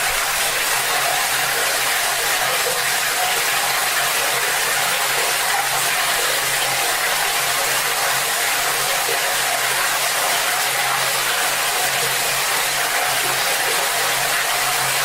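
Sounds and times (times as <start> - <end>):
tap water gushing into bucket: 0.0 - 15.0.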